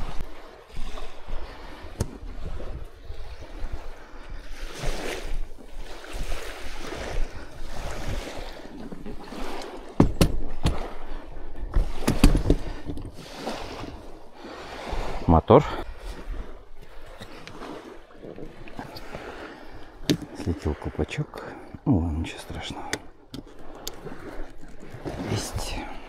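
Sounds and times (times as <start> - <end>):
wind buffeting microphone: 0.0 - 15.2
small waves on shore: 0.0 - 26.0
sharp knocks: 10.0 - 10.8.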